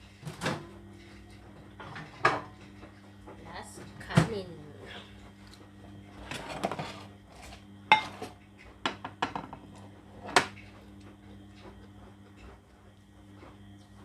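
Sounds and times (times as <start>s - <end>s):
dishes and cutlery clinking: 7.9s - 8.3s.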